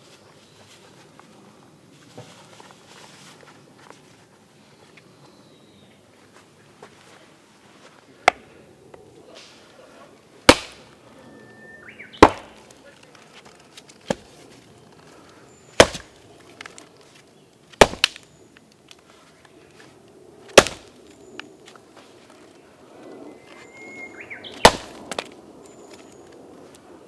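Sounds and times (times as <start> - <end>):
hatchet chopping firewood: 8.2 - 8.6, 10.4 - 11.0, 12.1 - 17.0, 17.7 - 19.1, 20.4 - 21.8, 23.6 - 26.3.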